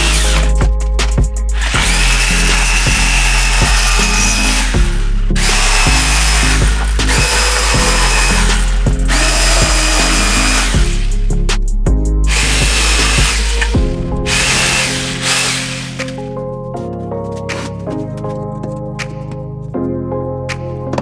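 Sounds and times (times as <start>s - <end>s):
power drill whining: 0.0s - 0.7s, 1.6s - 11.2s, 12.3s - 16.2s
background music with bass: 0.0s - 21.0s.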